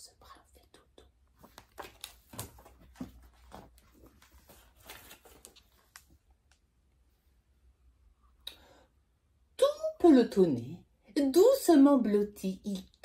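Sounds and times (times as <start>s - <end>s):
rustling and light taps: 1.4s - 6.2s.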